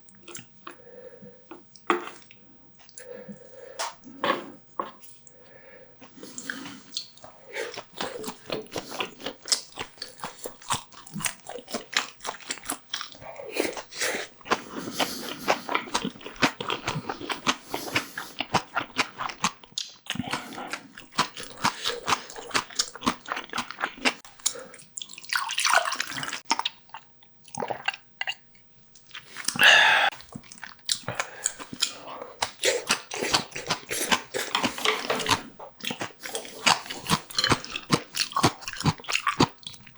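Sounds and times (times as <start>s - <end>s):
wet chewing and biting: 6.0s - 28.4s, 29.0s - 39.9s
loud noisy eating sounds: 29.4s - 39.8s.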